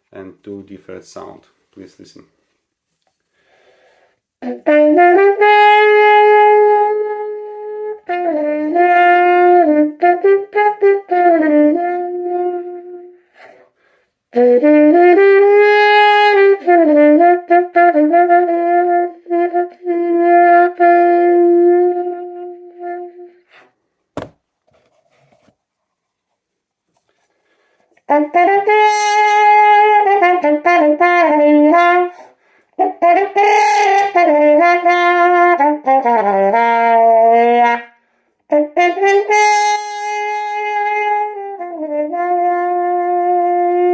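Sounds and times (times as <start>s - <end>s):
muted trumpet melody: 4.4s - 13.6s, 14.3s - 23.7s, 28.0s - 43.9s.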